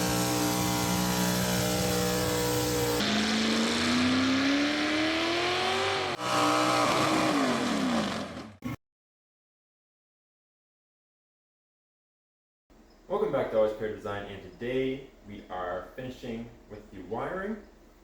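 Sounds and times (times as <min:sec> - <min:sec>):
engine revving: 0:00.0 - 0:08.6.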